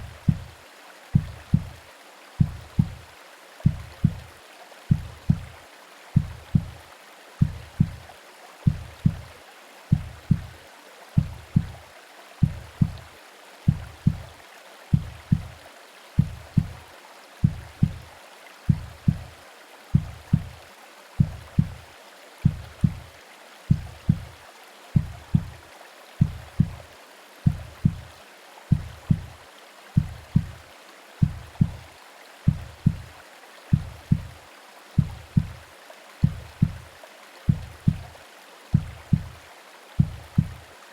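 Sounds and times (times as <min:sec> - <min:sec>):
heartbeat thumps: 0:00.0 - 0:01.8, 0:02.4 - 0:04.3, 0:04.9 - 0:05.6, 0:06.2 - 0:10.6, 0:11.2 - 0:11.8, 0:12.4 - 0:13.1, 0:13.7 - 0:15.6, 0:16.2 - 0:16.8, 0:17.4 - 0:18.1, 0:18.7 - 0:20.6, 0:21.2 - 0:21.8, 0:22.4 - 0:23.1, 0:23.7 - 0:24.4, 0:25.0 - 0:25.6, 0:26.2 - 0:29.4, 0:30.0 - 0:30.6, 0:31.2 - 0:31.9, 0:32.5 - 0:33.1, 0:33.7 - 0:34.4, 0:35.0 - 0:35.6, 0:36.2 - 0:36.9, 0:37.5 - 0:39.4, 0:40.0 - 0:40.7
white noise hiss: 0:00.0 - 0:40.9.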